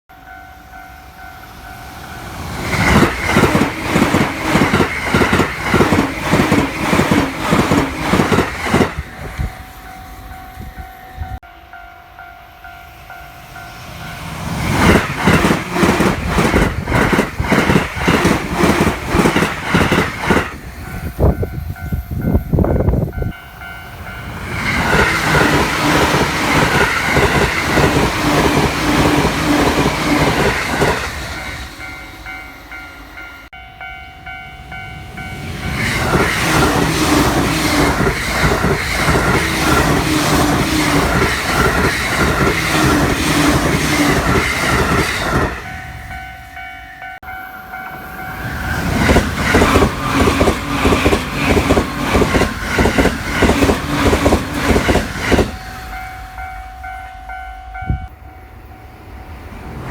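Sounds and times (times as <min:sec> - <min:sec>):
train wheels clattering over rail joints: 0:02.4 - 0:09.5, 0:14.5 - 0:21.2, 0:35.7 - 0:45.7, 0:48.4 - 0:55.7
crossing bell two-tone ding: 0:55.8 - 0:58.9.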